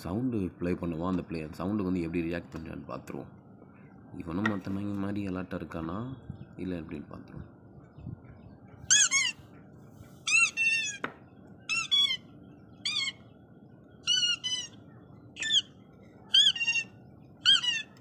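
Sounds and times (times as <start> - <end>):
high squeaks: 8.9 - 9.4, 10.2 - 11.0, 11.7 - 13.2, 14.0 - 14.8, 15.4 - 15.7, 16.3 - 18.0.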